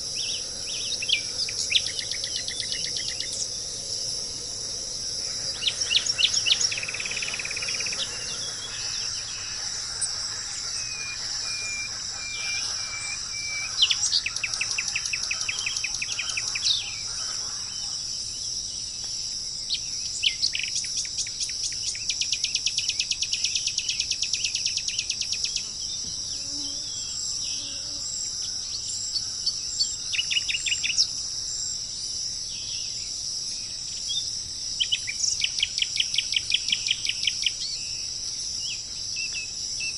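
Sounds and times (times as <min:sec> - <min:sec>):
birds calling in rattling trills: 0:00.0 - 0:18.6
high-pitched insect chorus: 0:00.0 - 0:39.9.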